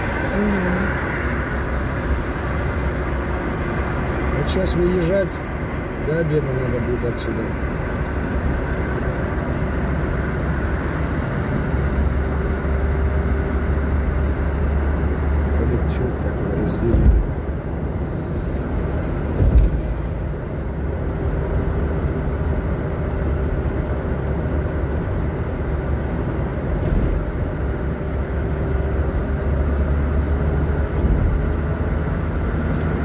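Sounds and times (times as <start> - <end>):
road and engine rumble in car: 0.0 - 33.0
thump: 19.4 - 20.0.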